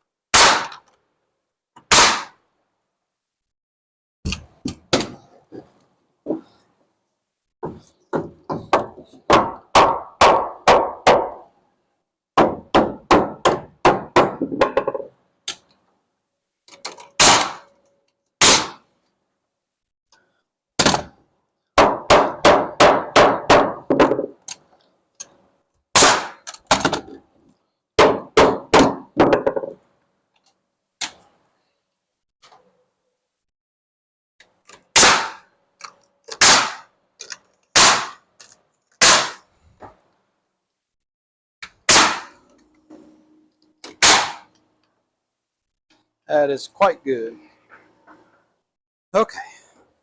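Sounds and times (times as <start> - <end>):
hammer driving nails into wood: 0.3 - 0.9, 1.8 - 2.4, 4.3 - 5.2, 7.6 - 11.5, 12.4 - 15.6, 16.9 - 17.7, 18.4 - 18.8, 20.8 - 21.2, 21.8 - 24.6, 28.0 - 29.8, 34.7 - 39.4, 41.8 - 42.4, 43.8 - 44.6.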